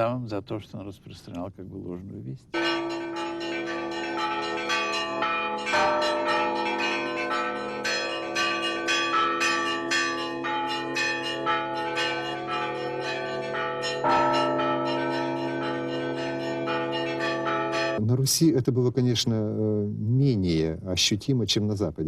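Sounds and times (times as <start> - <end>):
large bell humming: 2.6 - 18.0
small church bells struck quickly: 2.6 - 18.0.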